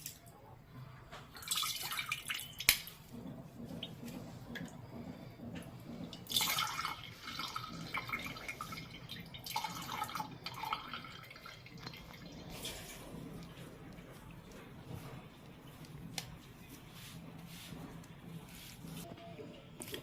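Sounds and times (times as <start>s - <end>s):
juice pouring through a strainer: 6.2s - 15.1s.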